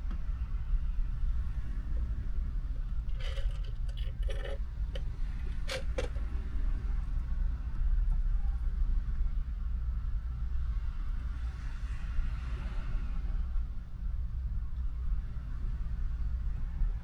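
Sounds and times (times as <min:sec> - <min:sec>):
steady low rumble: 0:00.0 - 0:12.3
objects clicking and rattling: 0:03.1 - 0:06.3.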